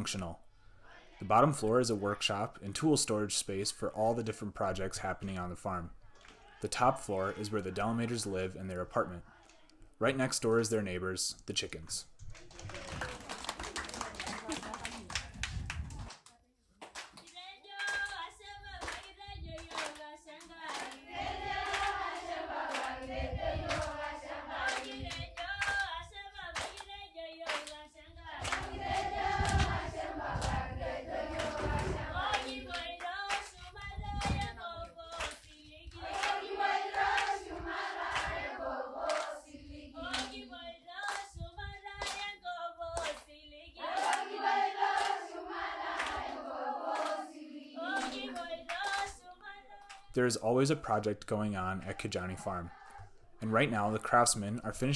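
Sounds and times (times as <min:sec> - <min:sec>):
rhythmic hand clapping: 0:12.7 - 0:50.1
group of voices singing: 0:17.5 - 0:50.1, 0:51.8 - 0:53.8.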